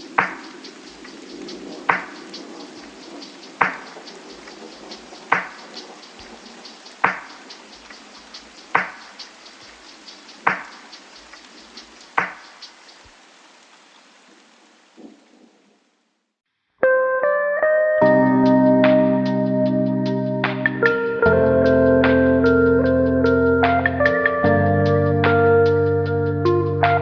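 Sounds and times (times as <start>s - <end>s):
rain-like hiss: 0.0s - 16.4s, 18.1s - 27.0s
soft beat music: 18.0s - 27.0s.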